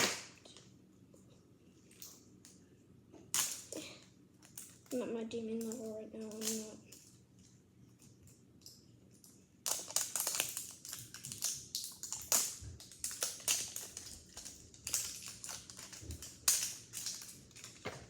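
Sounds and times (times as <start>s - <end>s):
plastic packaging crinkling: 9.6s - 18.0s.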